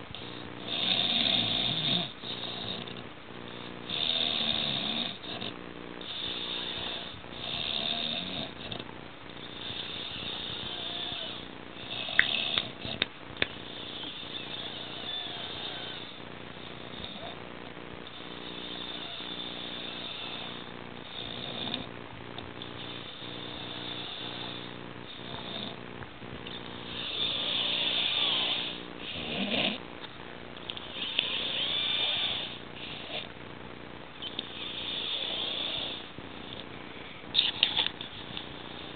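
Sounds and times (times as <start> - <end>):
man snoring loudly: 0.6 - 2.8, 3.9 - 8.8, 9.5 - 13.0, 13.7 - 16.2, 18.4 - 21.9, 23.1 - 25.8, 26.9 - 29.8.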